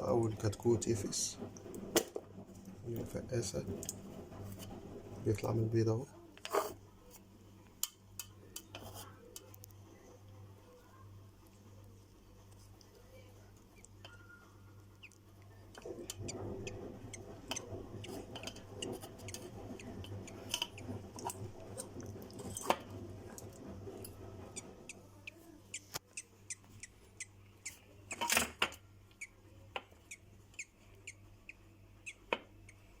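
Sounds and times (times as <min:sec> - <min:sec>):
steady low hum: 0:06.8 - 0:28.2.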